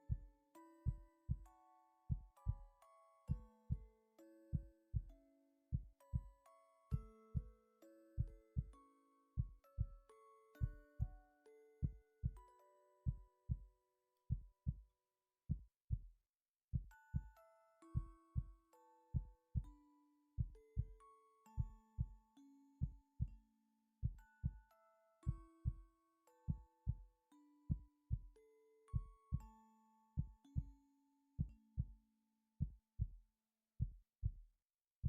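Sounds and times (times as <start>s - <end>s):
soft melody of sustained notes: 0.0s - 14.6s, 16.9s - 31.8s
heartbeat thumps: 2.1s - 2.6s.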